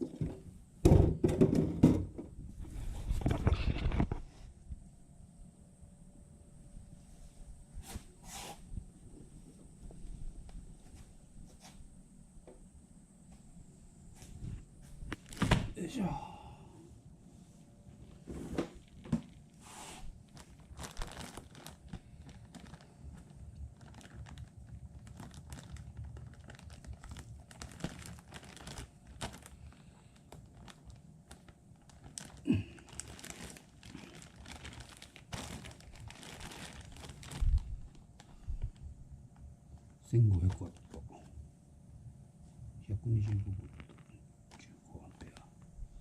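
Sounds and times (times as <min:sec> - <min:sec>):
plastic packaging crinkling: 0:15.1 - 0:15.8, 0:18.7 - 0:38.9, 0:39.7 - 0:41.2, 0:43.3 - 0:45.5.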